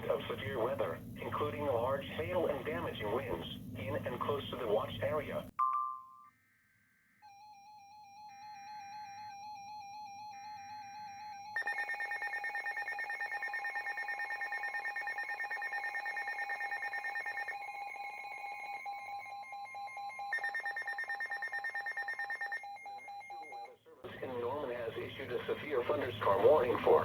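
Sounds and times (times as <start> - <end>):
pulsing electronic alarm tone: 6.4 - 23.8.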